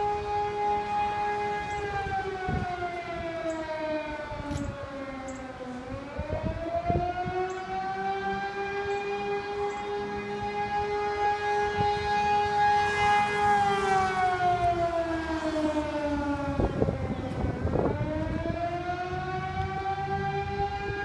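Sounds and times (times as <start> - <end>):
warning siren wailing: 0.0 - 21.0.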